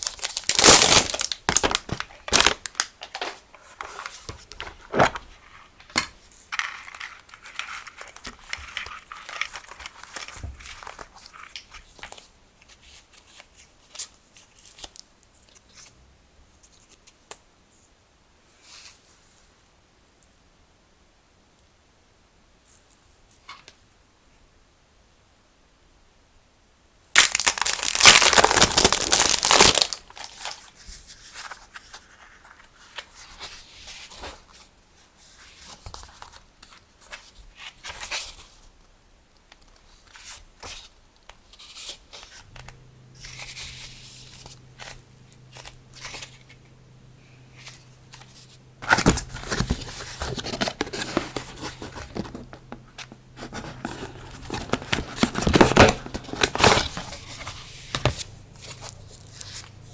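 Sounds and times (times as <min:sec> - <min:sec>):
packaging tearing and crinkling: 0:00.0 - 0:05.3, 0:05.9 - 0:12.2, 0:27.2 - 0:30.8, 0:47.6 - 0:59.8
faint low hum: 0:38.3 - 0:59.9.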